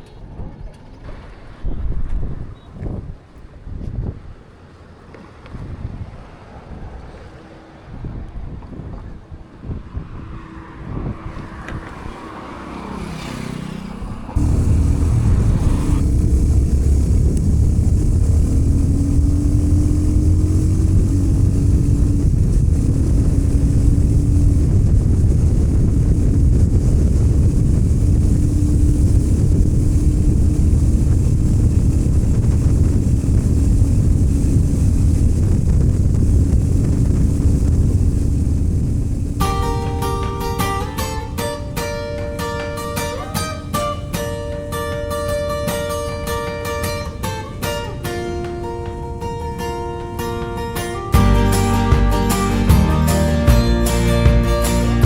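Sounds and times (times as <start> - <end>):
wind noise on microphone: 0.0 - 4.6, 5.2 - 55.0
motorcycle engine: 10.5 - 52.8
uneven rumbling: 13.7 - 54.8.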